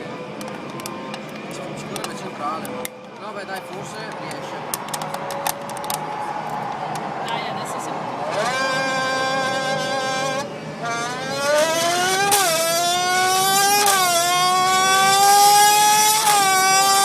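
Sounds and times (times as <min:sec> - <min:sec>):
buzzing engine imitation revving: 0:08.1 - 0:17.0.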